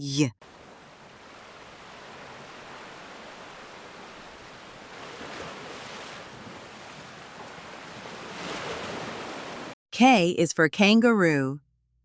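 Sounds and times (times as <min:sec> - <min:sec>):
ocean waves washing in: 0:00.4 - 0:09.8.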